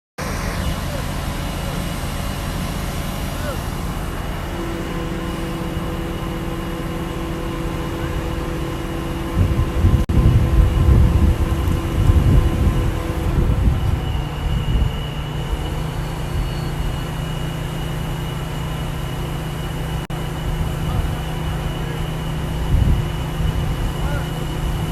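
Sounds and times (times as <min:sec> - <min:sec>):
heavy diesel engine rumbling: 0:00.2 - 0:24.9.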